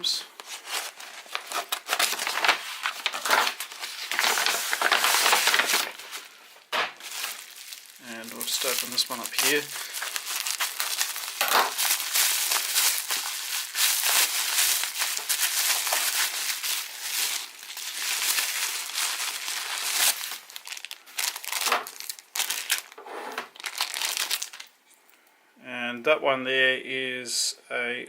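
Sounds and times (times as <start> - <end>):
handling noises: 0.4 - 22.0
packaging crinkling: 0.4 - 24.8.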